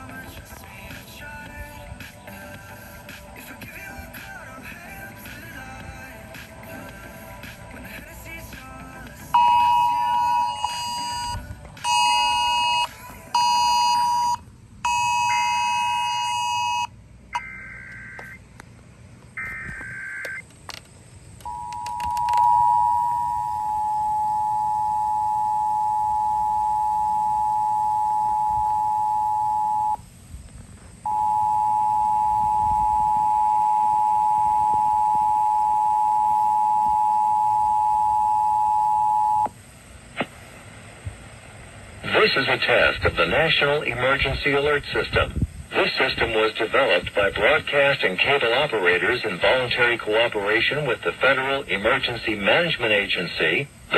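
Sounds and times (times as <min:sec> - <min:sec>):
harsh data bursts: 0:09.2 - 0:18.4
phone emergency alert tone: 0:09.3 - 0:18.4, 0:19.4 - 0:20.4, 0:21.4 - 0:30.0, 0:31.1 - 0:39.5
two-tone attention signal: 0:09.4 - 0:18.4, 0:21.5 - 0:30.0, 0:31.1 - 0:39.5.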